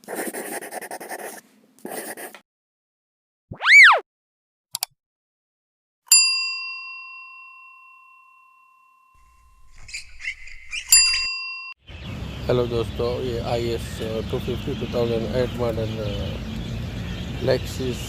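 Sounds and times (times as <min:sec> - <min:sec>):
pitched swoop: 0:03.5 - 0:04.0
click: 0:04.7 - 0:04.9
bell-like ding: 0:06.1 - 0:09.6, 0:11.0 - 0:11.8.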